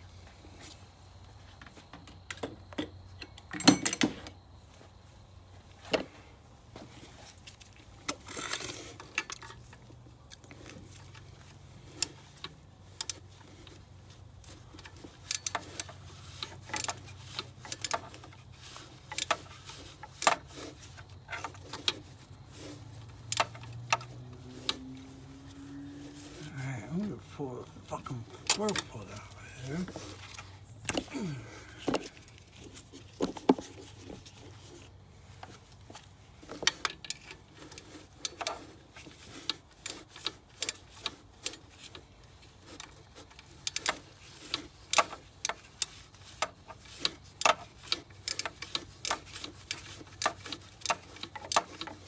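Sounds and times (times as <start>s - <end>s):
metallic clinks of tools: 3.5s - 4.0s.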